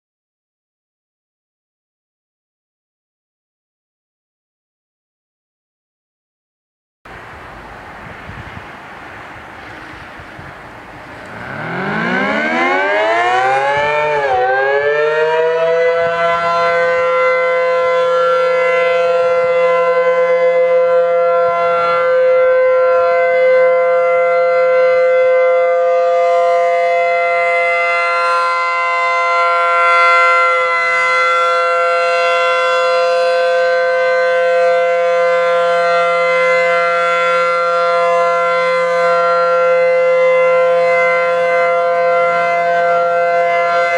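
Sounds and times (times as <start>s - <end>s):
warning siren winding up: 11.0s - 43.9s.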